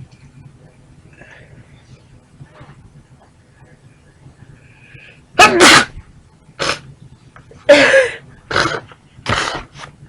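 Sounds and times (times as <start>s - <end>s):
woman sneezing: 5.4s - 6.0s.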